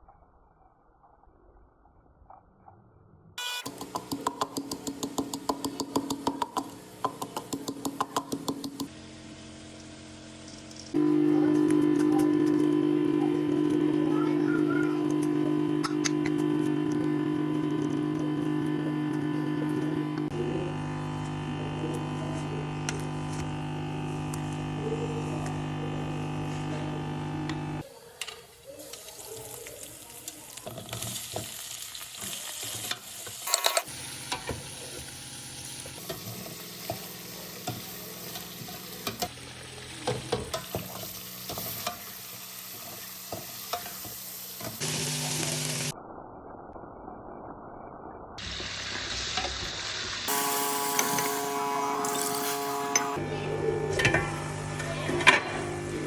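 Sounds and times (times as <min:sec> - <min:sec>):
food sizzling in a pan: 0:03.7 - 0:46.0, 0:48.4 - 0:53.2
steady hum: 0:11.0 - 0:27.8, 0:50.3 - 0:56.0.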